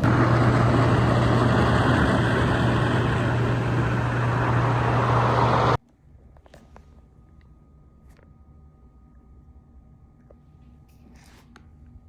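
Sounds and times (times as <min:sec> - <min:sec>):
vehicle interior running noise: 0:00.0 - 0:05.8.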